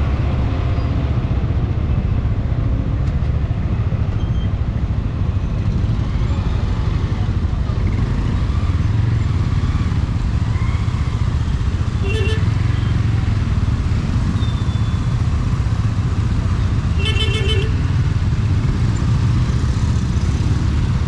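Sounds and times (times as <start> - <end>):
road and wind noise: 0.0 - 21.0
motorcycle engine running: 10.9 - 21.0
vehicle horn beeping: 12.0 - 12.5, 17.0 - 17.8.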